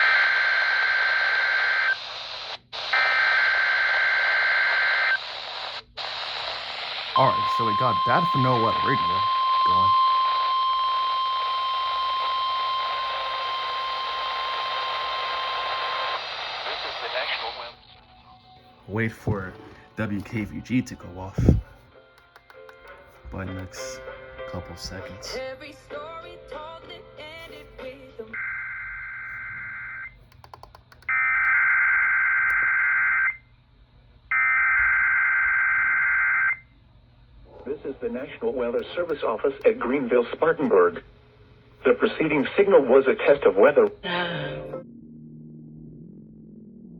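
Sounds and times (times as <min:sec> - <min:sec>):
static hiss: 0:04.1 - 0:18.2
steady alarm tone: 0:07.2 - 0:16.2
faint clicks: 0:22.2 - 0:23.0, 0:30.3 - 0:31.1.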